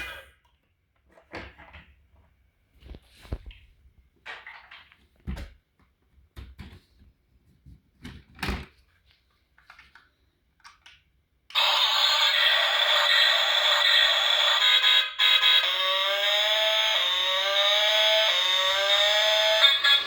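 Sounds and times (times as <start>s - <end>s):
toy electronic sound effect: 11.5s - 20.0s.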